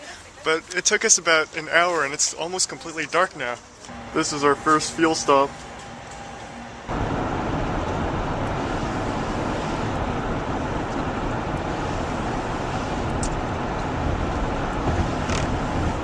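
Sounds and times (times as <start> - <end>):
car road noise: 3.7 - 16.0.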